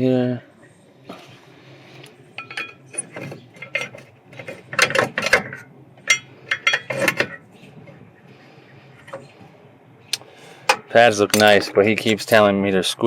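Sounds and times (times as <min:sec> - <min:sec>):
brake pad clinking against metal: 0:02.4 - 0:07.4.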